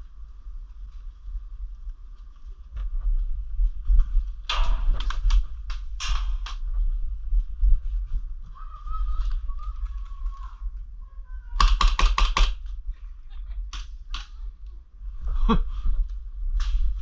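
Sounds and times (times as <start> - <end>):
airsoft gun shots: 11.6 - 12.6.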